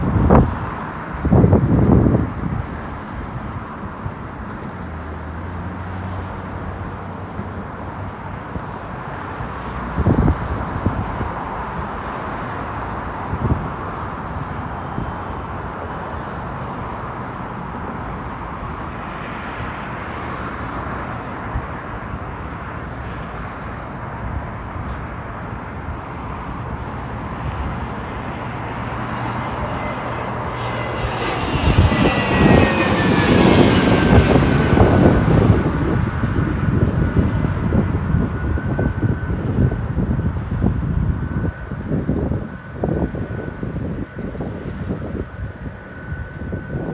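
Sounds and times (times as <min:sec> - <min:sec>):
jet engines rushing: 0:00.0 - 0:46.9
high engine whine: 0:16.5 - 0:46.9.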